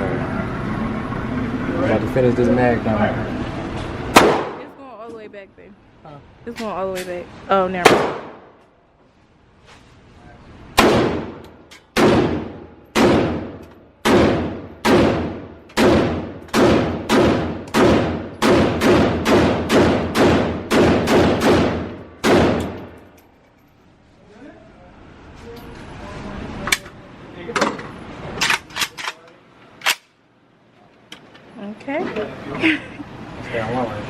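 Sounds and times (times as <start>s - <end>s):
gunshots with echo: 4.1s - 4.6s, 7.8s - 8.5s, 10.8s - 11.4s, 12.0s - 22.8s.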